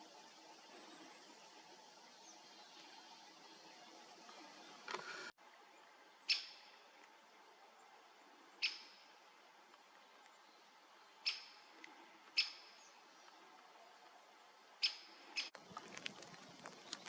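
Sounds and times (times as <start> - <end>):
bird call notes: 6.3 - 6.8, 8.6 - 9.1, 11.2 - 11.7.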